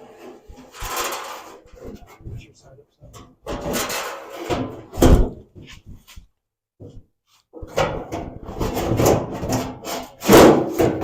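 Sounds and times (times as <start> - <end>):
sheet metal scraping: 0.0 - 2.5, 3.2 - 5.2, 7.7 - 11.0.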